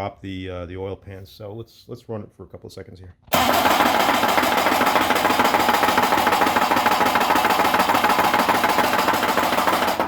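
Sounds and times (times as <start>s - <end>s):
engine cranking and knocking: 3.3s - 10.0s.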